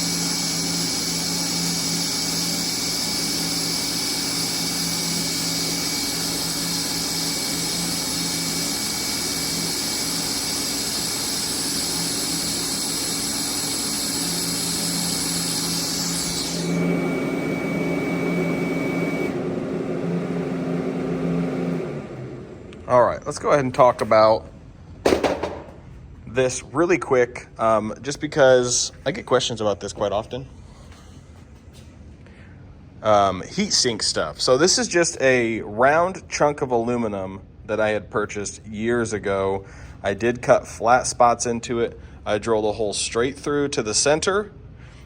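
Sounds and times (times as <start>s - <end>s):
welding arc buzzing hiss: 0.0s - 19.3s.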